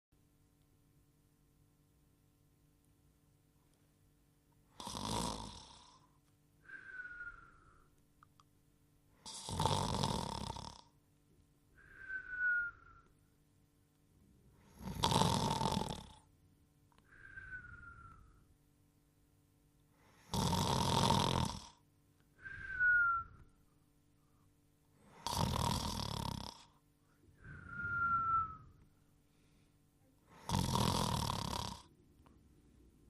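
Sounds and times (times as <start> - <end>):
cartoon rasping snore: 4.7 - 6.0, 9.2 - 10.9, 14.7 - 16.3, 20.2 - 21.8, 25.1 - 26.8, 30.3 - 31.9
thin whistle dipping in pitch: 27.5 - 28.8.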